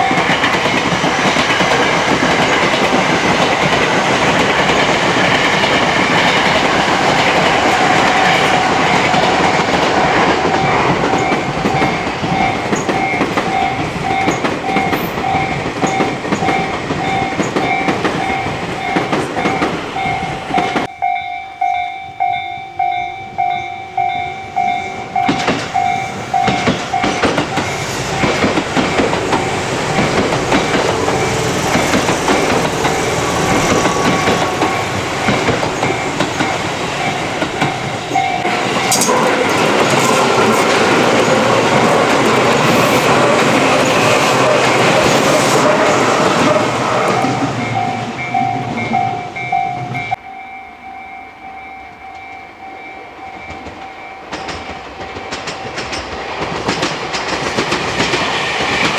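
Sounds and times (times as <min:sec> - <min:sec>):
wheels clattering over rail joints: 0:00.0 - 0:20.9, 0:24.5 - 0:50.1
level crossing bell clanging: 0:00.0 - 0:56.2
electric train passing: 0:00.0 - 0:58.9.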